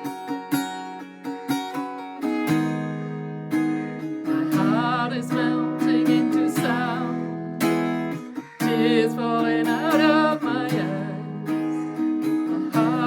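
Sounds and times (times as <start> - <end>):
acoustic guitar strumming chords: 0.0 - 13.0
wavering melody with vibrato: 3.6 - 13.0.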